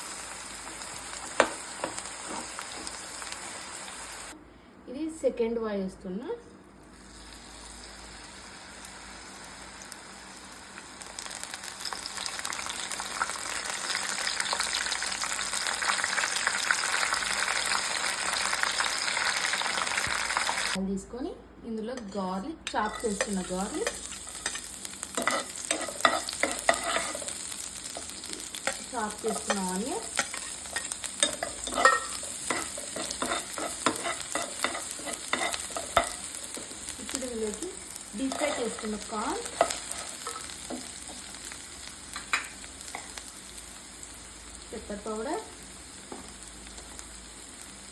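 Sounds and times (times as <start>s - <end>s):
corn kernels deep-frying in oil: 0.0s - 4.4s, 7.0s - 20.8s, 22.8s - 47.9s
spatula scraping a pan: 25.2s - 27.4s, 28.0s - 36.2s.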